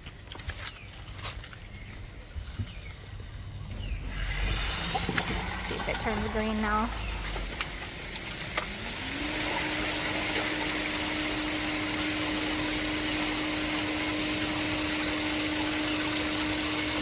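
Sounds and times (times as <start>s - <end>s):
pump motor hum: 2.0s - 17.0s
water rushing through filter: 3.0s - 17.0s.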